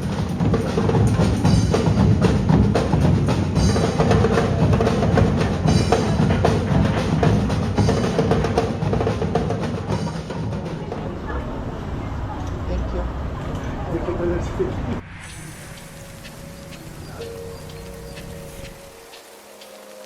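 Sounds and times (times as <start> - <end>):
music with knocking percussion beat: 0.0 - 11.0, 15.7 - 19.8.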